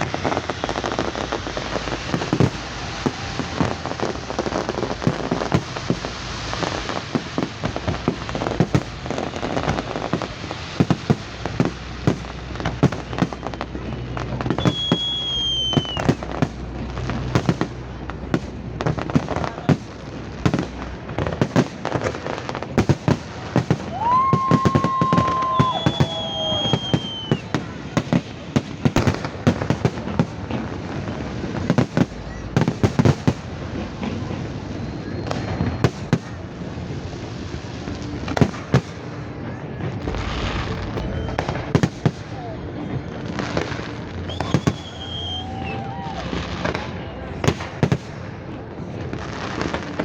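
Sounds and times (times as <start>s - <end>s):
firework whistle: 0.0s - 13.7s, 14.5s - 16.6s, 22.8s - 30.2s, 34.7s - 36.3s, 40.0s - 42.6s, 44.1s - 46.8s
fireworks bangs and crackles: 0.0s - 50.0s.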